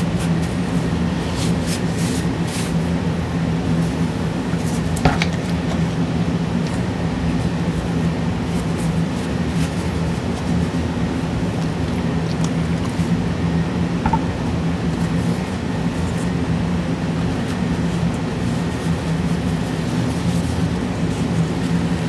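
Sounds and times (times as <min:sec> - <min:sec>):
low mechanical hum: 0:00.0 - 0:22.0
paper towel rustling on metal fins: 0:00.0 - 0:22.0.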